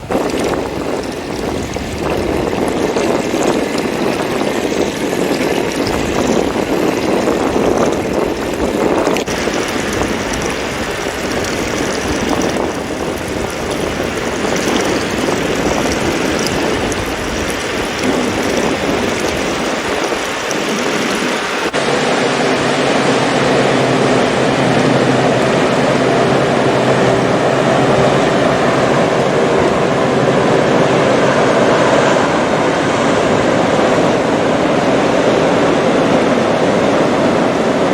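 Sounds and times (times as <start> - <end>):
ocean waves breaking on beach: 0.0 - 37.9
steady low hum: 21.7 - 37.9.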